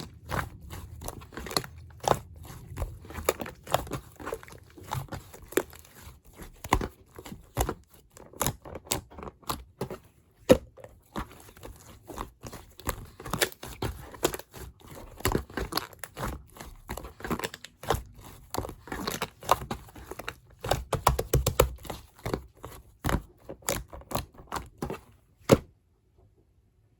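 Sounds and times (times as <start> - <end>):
apple being bitten and chewed: 0.0 - 7.5.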